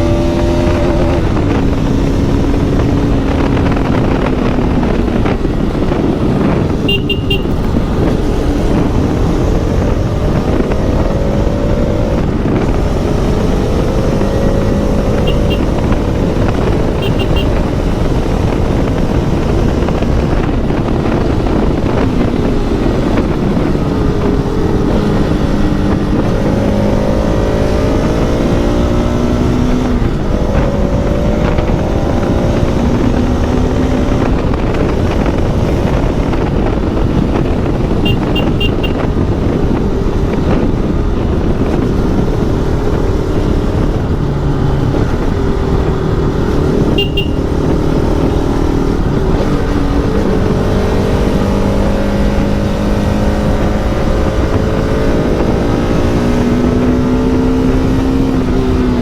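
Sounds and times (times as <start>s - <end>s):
motorcycle engine revving: 0.0s - 59.0s
wind and road noise: 0.0s - 59.0s
short high beeps: 6.8s - 7.7s, 15.2s - 15.7s, 17.0s - 17.6s, 38.1s - 39.0s, 47.0s - 47.5s.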